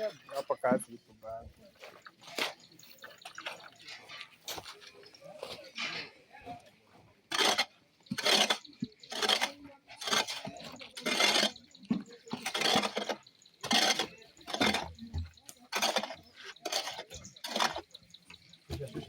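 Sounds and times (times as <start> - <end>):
hand hoe scraping soil: 7.3 - 19.0.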